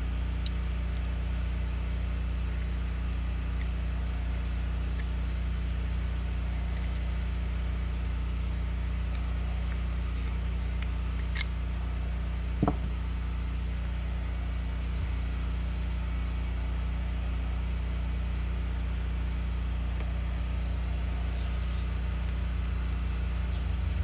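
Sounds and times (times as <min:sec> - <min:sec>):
low background hum: 0:00.0 - 0:24.0
screwdriver clicks and knocks: 0:12.6 - 0:12.9.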